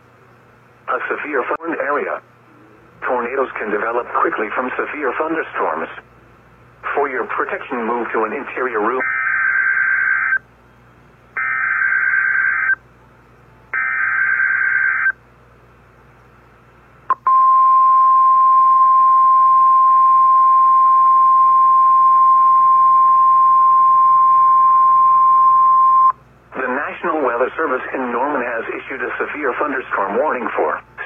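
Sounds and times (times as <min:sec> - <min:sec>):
steady warning alarm tone: 0:09.0 - 0:10.4, 0:11.4 - 0:12.8, 0:13.8 - 0:15.2.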